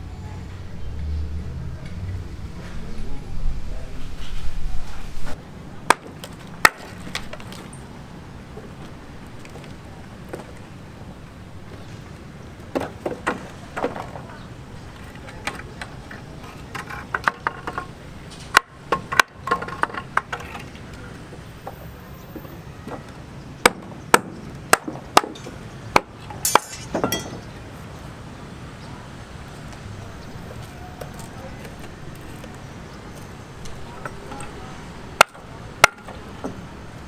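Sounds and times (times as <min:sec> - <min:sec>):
knocks and clinks of hand tools: 0:24.8 - 0:25.7, 0:26.3 - 0:27.6.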